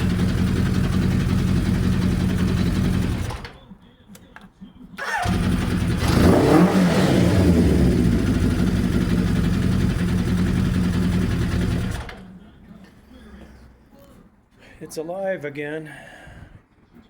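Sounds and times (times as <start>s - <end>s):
motorcycle engine starting and idling: 0.0s - 3.6s, 5.0s - 12.4s.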